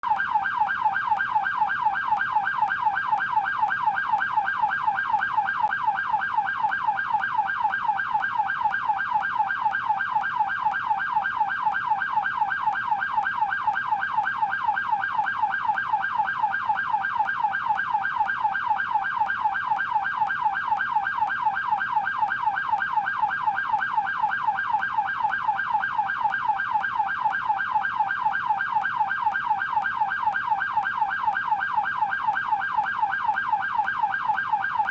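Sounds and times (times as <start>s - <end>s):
police siren yelping: 0.0s - 34.9s.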